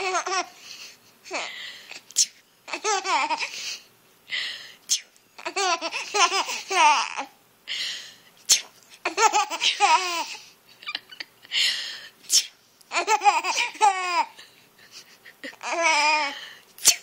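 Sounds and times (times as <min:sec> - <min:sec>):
person sneezing: 0:02.0 - 0:02.4, 0:04.9 - 0:05.1, 0:08.5 - 0:08.8, 0:12.2 - 0:12.6, 0:16.8 - 0:17.0
child laughing: 0:09.0 - 0:11.4, 0:12.9 - 0:16.3.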